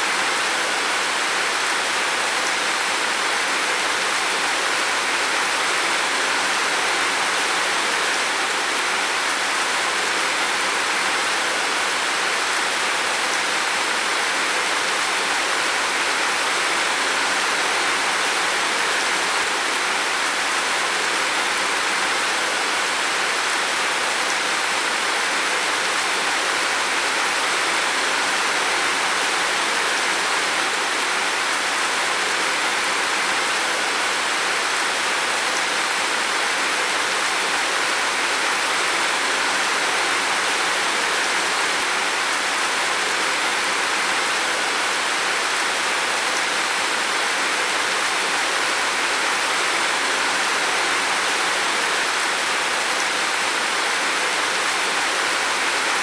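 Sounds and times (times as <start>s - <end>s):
heavy rain on a roof: 0.0s - 56.0s.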